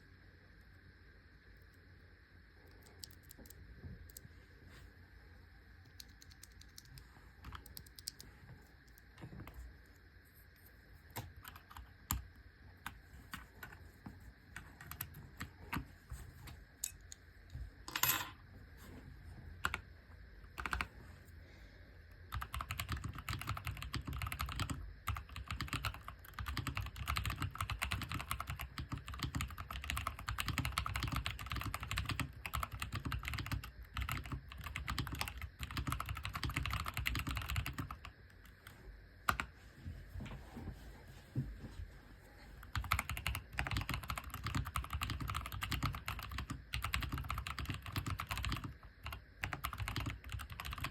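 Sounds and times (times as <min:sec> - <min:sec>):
mechanical keyboard typing: 0:06.0 - 0:08.3, 0:14.8 - 0:15.9, 0:20.6 - 0:20.9, 0:22.3 - 0:38.1, 0:42.7 - 0:50.9.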